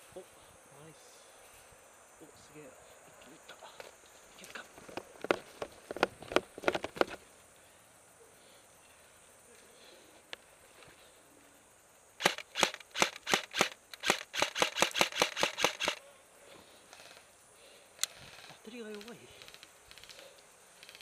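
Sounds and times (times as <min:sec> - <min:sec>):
airsoft gun shots: 0:12.2 - 0:16.0.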